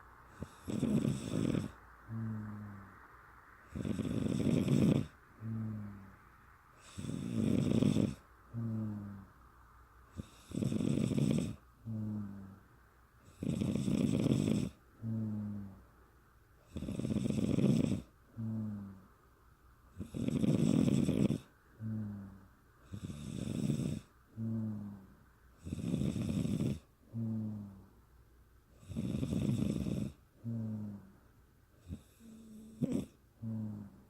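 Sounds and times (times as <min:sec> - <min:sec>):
low humming tone: 0:00.0 - 0:10.3, 0:11.6 - 0:13.3, 0:14.7 - 0:16.6, 0:18.0 - 0:20.0, 0:21.4 - 0:23.0, 0:24.0 - 0:25.6, 0:26.9 - 0:28.7, 0:32.4 - 0:34.0
woman snoring: 0:00.3 - 0:02.9, 0:03.7 - 0:06.1, 0:06.8 - 0:09.3, 0:10.2 - 0:12.6, 0:13.3 - 0:15.8, 0:16.7 - 0:19.0, 0:20.0 - 0:27.8, 0:28.8 - 0:31.1, 0:31.8 - 0:34.0.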